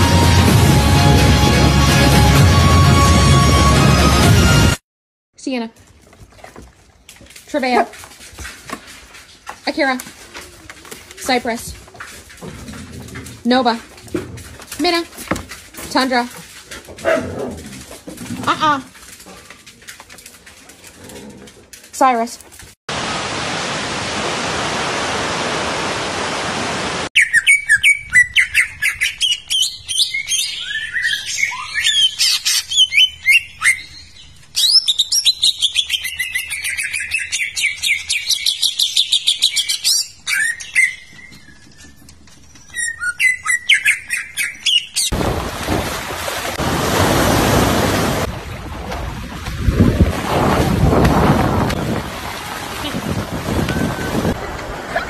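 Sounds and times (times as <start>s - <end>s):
songbirds chirping and trilling: 27.2s - 45.1s.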